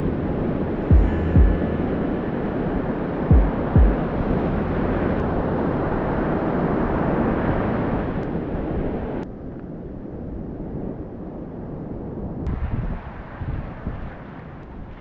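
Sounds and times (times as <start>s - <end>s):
sea surf washing: 0.0s - 9.2s
wind buffeting microphone: 0.0s - 15.0s
low gust thumps: 0.2s - 5.9s.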